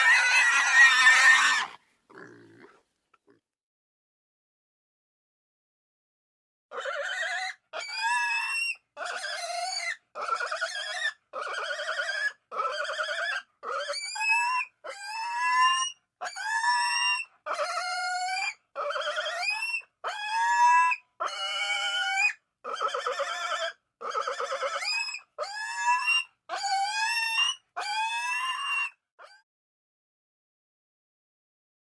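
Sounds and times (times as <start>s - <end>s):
pig squealing: 0.0s - 2.8s, 6.7s - 29.4s.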